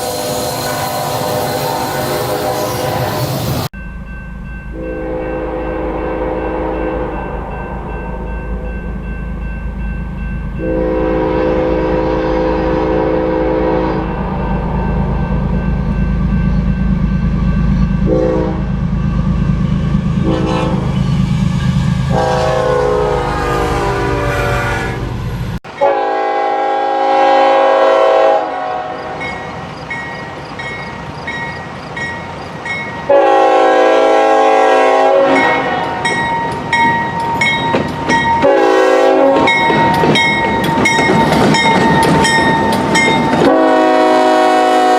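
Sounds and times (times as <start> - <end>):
locomotive air horn blasts: 0.0 - 3.4, 4.7 - 7.6, 10.6 - 14.4, 18.0 - 18.7, 20.2 - 21.2, 22.0 - 29.3, 33.1 - 36.2, 38.4 - 39.6, 43.4 - 44.9
passing train rumble: 0.0 - 44.9.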